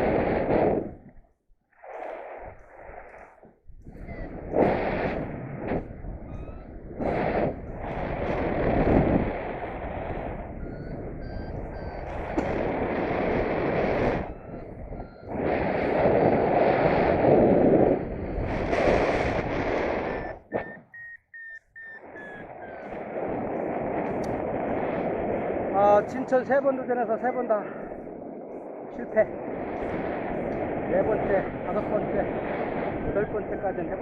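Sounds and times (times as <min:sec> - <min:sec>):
wind rushing over microphone: 0:00.0 - 0:34.0
variometer beeping: 0:10.1 - 0:16.1, 0:20.1 - 0:23.1.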